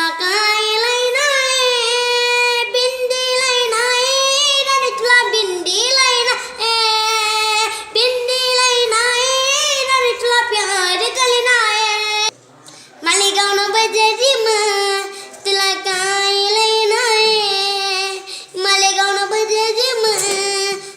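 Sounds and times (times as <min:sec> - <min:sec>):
child singing: 0:00.0 - 0:12.3, 0:13.0 - 0:20.9.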